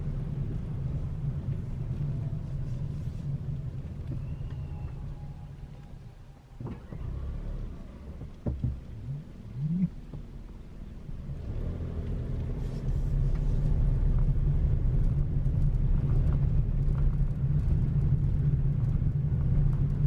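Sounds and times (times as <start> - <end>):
car engine and road rumble: 0.0 - 20.0.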